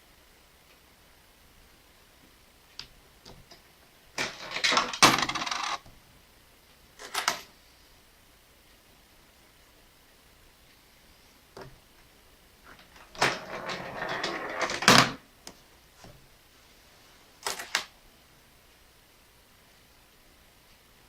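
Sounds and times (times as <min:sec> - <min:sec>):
coins clicking: 0:04.2 - 0:05.8
coins clinking: 0:04.2 - 0:05.8
coins sliding and clattering: 0:04.2 - 0:05.8, 0:12.9 - 0:15.2.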